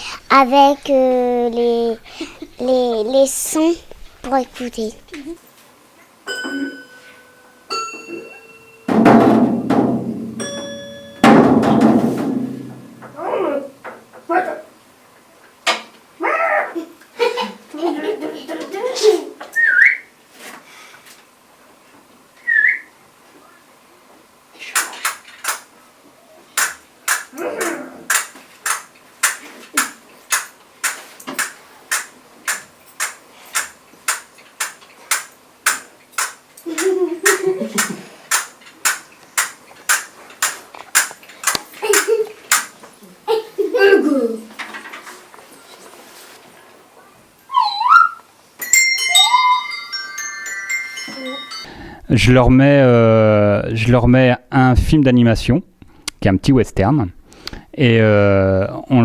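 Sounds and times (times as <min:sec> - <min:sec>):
bell-like percussion notes: 0:06.3 - 0:09.0, 0:10.2 - 0:11.5, 0:48.6 - 0:52.0
loud ringing drum hits: 0:08.9 - 0:13.1
sharp percussion clicks: 0:24.8 - 0:25.7, 0:26.6 - 0:27.4, 0:28.1 - 0:42.8.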